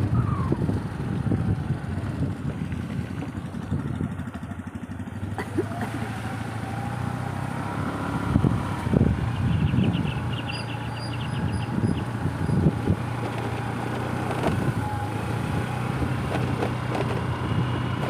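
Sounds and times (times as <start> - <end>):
wind noise: 0.0 - 4.1, 8.2 - 10.5, 11.1 - 18.0
vehicle engine running: 0.0 - 18.0.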